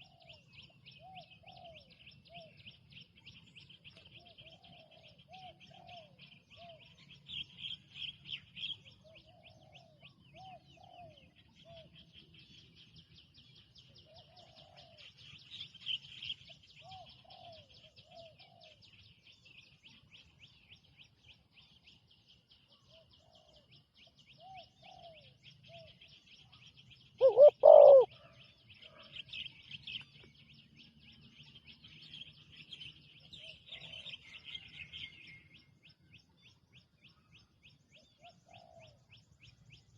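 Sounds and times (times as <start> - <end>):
doves cooing: 4.2 - 6.9, 14.1 - 15.0, 27.2 - 28.3, 38.2 - 39.0.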